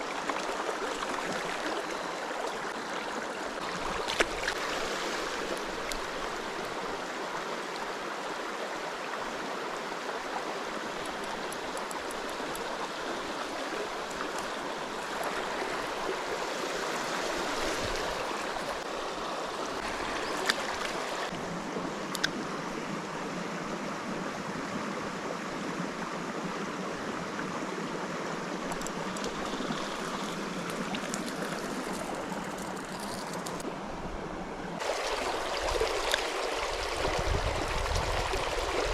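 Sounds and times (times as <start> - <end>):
stream water running over rocks: 0.0 - 38.9
faint sharp clicks: 22.1 - 22.4.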